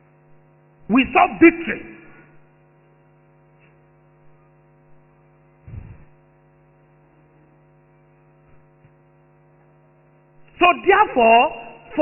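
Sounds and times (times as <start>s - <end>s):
electrical mains hum: 0.0s - 12.0s
low thump: 5.7s - 6.0s.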